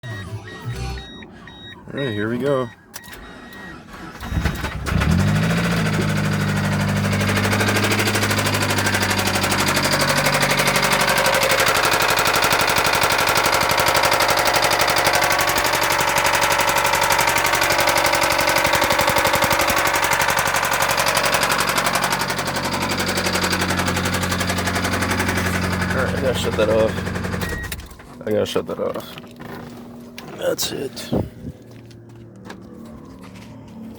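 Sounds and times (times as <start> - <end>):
car engine starting: 0.0 - 33.9
engine idling with knock: 4.8 - 28.2.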